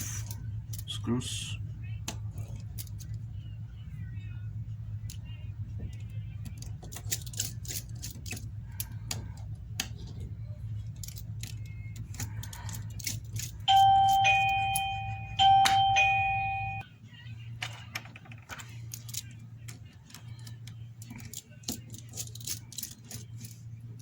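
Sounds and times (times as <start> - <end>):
steady low hum: 0.0 - 24.0
two-note doorbell chime: 13.7 - 16.8.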